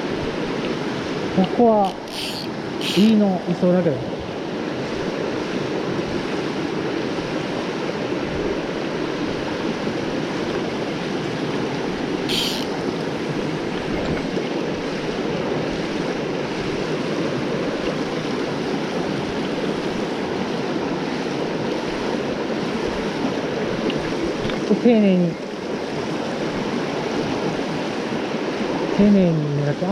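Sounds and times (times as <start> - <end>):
stream water rushing: 0.0 - 29.9
high click: 1.8 - 3.2, 12.3 - 12.7.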